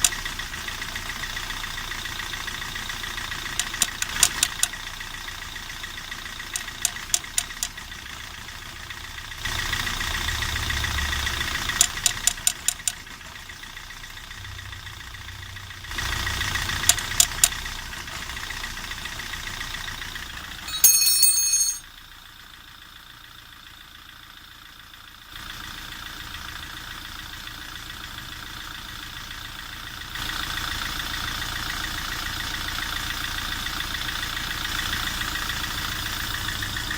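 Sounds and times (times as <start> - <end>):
car engine running: 0.0 - 21.1.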